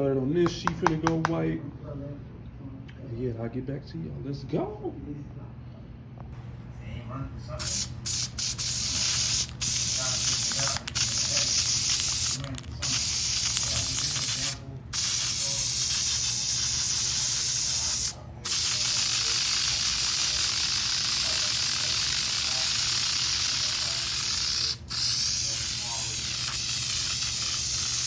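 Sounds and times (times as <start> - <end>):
aerosol spray can hissing: 7.6 - 28.0.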